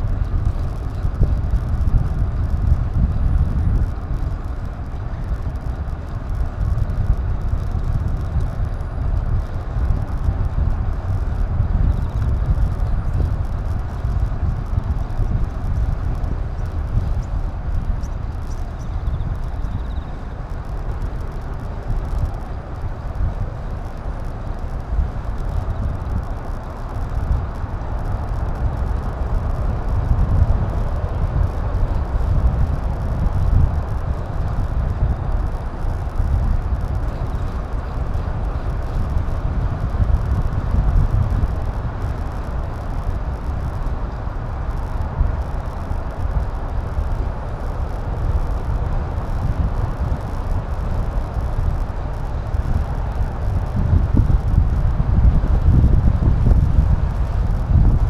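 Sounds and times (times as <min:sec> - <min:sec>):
wind and road noise: 0:00.0 - 0:58.0.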